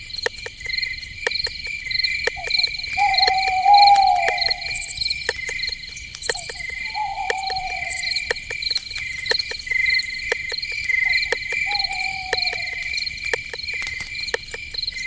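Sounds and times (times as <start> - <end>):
crickets trilling: 0.0 - 15.0
sharp clicks: 0.2 - 15.0
low falling animal call: 2.4 - 5.1, 6.5 - 8.5, 11.6 - 13.0.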